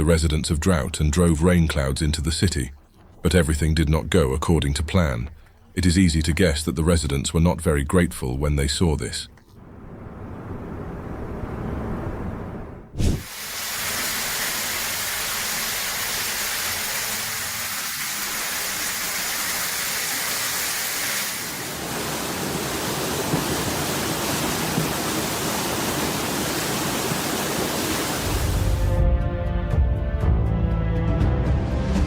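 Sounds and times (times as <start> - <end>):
flowing water: 1.5 - 5.8, 13.0 - 28.9
heavy rain: 13.1 - 29.0.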